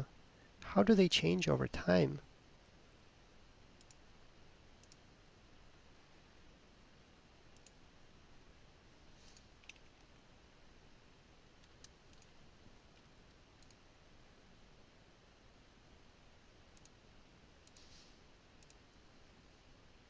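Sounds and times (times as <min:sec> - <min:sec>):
computer mouse clicks: 0:03.8 - 0:04.0, 0:04.8 - 0:05.0, 0:07.5 - 0:07.8, 0:09.2 - 0:10.1, 0:11.6 - 0:13.8, 0:16.7 - 0:17.0, 0:17.6 - 0:18.8.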